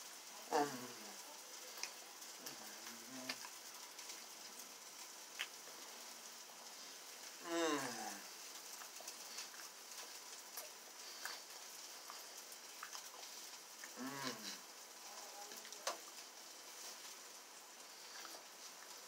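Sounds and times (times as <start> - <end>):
faint steady hiss: 0.0 - 19.0
low hummed voice-like sound: 0.3 - 3.5, 7.4 - 8.3, 13.9 - 16.0.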